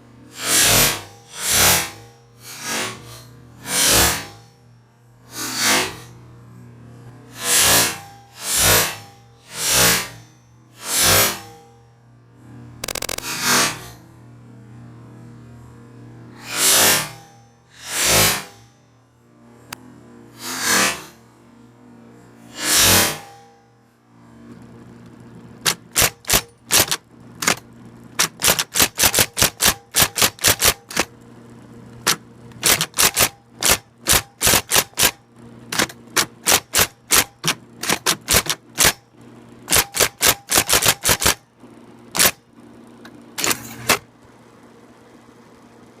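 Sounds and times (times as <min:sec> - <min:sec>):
typewriter typeball clacks: 0:12.8 - 0:13.2
typewriter motor hum: 0:12.8 - 0:13.3.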